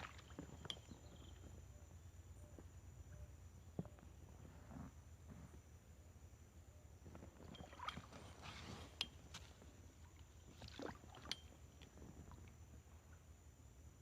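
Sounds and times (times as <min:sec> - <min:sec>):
paddle splashing in water: 0:00.0 - 0:00.6, 0:07.4 - 0:09.0, 0:10.1 - 0:11.6.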